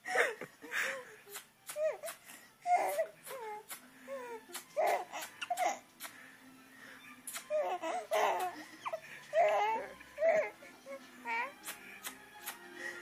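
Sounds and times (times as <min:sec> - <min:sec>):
baby laughing and babbling: 0:01.3 - 0:05.8, 0:07.4 - 0:10.5.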